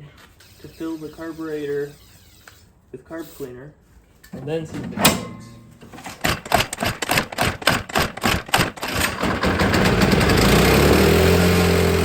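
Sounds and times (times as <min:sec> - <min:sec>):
sharp irregular engine pops: 0:04.8 - 0:09.5
snowblower engine sputtering and running: 0:06.1 - 0:12.0.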